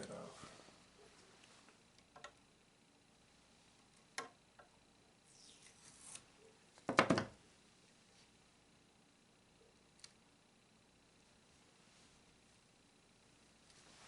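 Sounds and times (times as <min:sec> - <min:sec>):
crackling clicks: 0:09.9 - 0:10.2.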